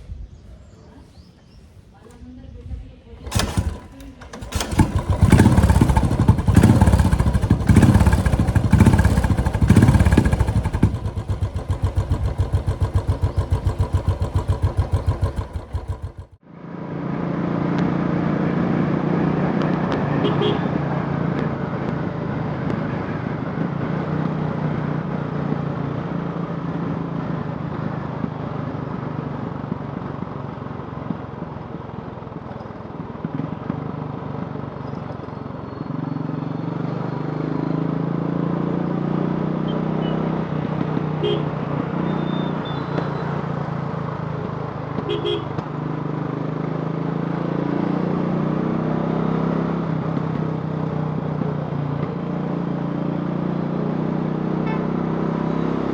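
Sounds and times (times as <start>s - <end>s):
motorcycle engine running: 3.2s - 16.5s, 38.7s - 55.9s.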